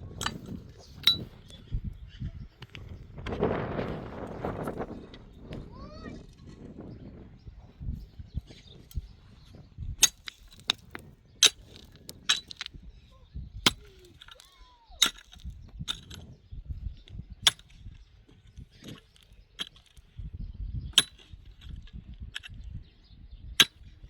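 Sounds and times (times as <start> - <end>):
hard objects clinking and knocking: 0.2 - 1.4, 10.0 - 12.8, 13.7 - 16.3, 18.8 - 20.0, 21.0 - 22.6.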